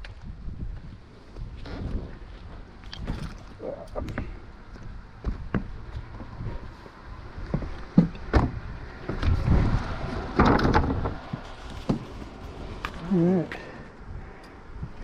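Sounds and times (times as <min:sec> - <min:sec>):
sharp knocks and thumps: 0:05.2 - 0:06.3, 0:07.5 - 0:12.3
rustling: 0:09.4 - 0:13.7.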